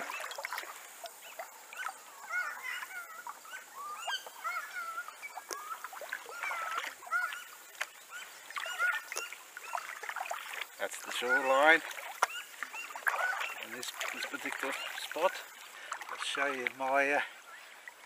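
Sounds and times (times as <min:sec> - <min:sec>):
short chirping animal calls: 0:01.2 - 0:09.8.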